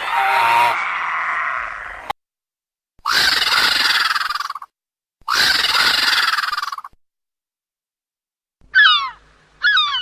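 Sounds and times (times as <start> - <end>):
dinosaur roar: 0.0 - 2.1.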